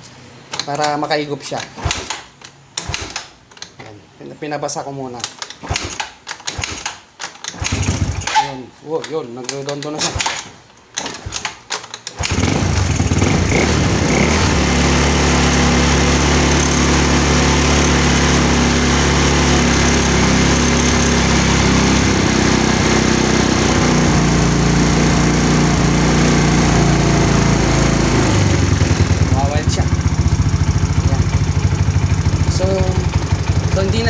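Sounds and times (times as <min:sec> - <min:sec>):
scooter engine sputtering and idling: 0:07.5 - 0:08.3, 0:12.2 - 0:34.0.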